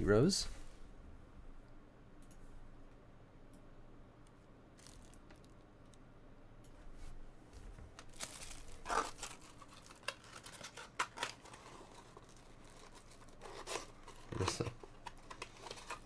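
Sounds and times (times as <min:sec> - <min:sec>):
packaging rustling and crinkling: 0:04.8 - 0:05.6, 0:07.6 - 0:16.0.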